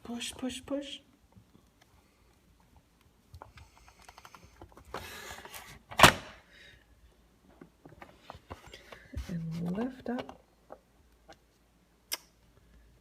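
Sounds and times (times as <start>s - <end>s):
hands rubbing and handling dough: 7.7s - 12.9s.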